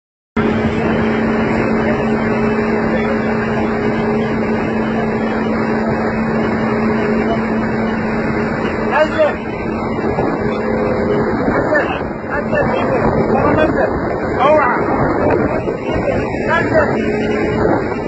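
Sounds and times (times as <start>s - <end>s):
engine drone: 0.4s - 18.0s.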